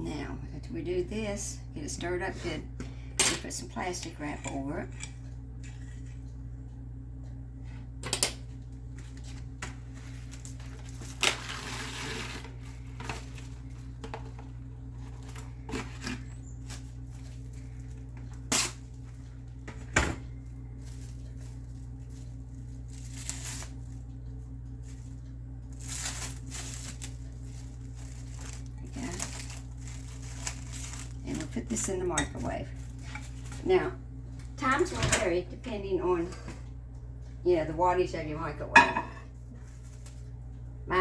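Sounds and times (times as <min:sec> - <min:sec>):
low electrical hum: 0:00.0 - 0:41.0
plastic wrap rustling: 0:09.0 - 0:19.2, 0:20.8 - 0:24.0, 0:24.8 - 0:33.6, 0:39.6 - 0:40.2.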